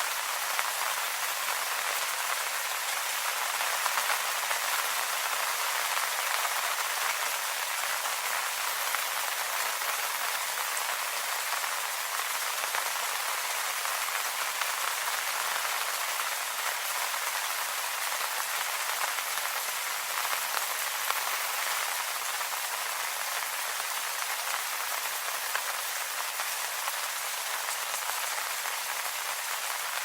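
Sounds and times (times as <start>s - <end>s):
rain falling on leaves: 0.0s - 30.0s.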